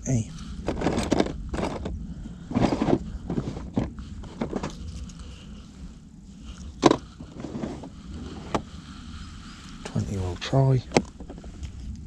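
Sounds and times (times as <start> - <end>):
low steady rumble: 0.0 - 12.0
fishing tackle rustles and knocks: 0.6 - 5.4, 6.4 - 8.7.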